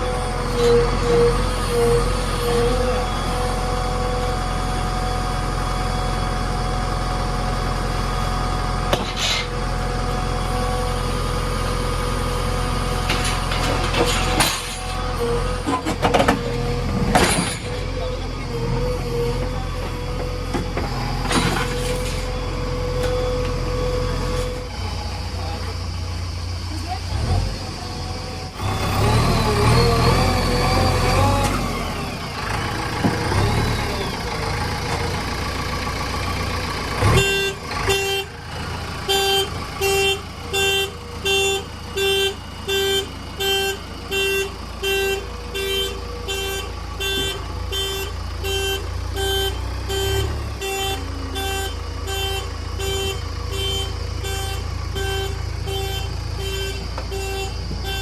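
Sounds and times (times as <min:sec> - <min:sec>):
reversing alarm beeping: 0:00.0 - 0:05.3, 0:37.0 - 0:58.0
heavy diesel engine running: 0:00.0 - 0:58.0.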